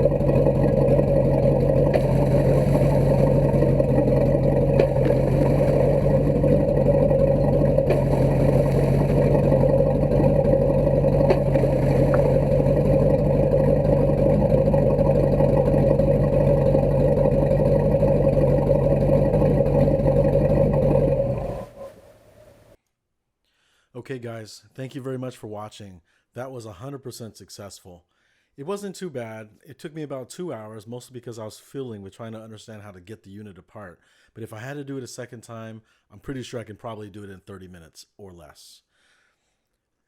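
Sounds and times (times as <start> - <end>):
boat engine idling: 0.0 - 22.8.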